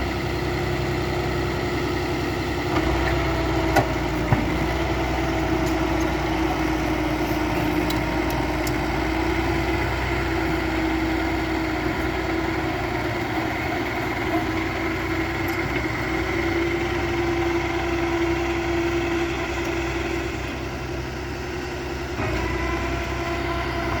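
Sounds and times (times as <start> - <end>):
bulldozer diesel engine running: 0.0 - 24.0.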